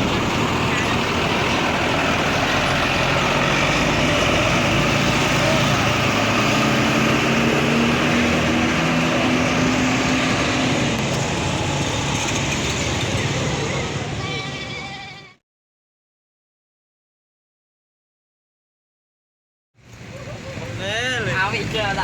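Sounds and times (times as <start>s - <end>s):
bus diesel engine running: 0.0s - 15.4s.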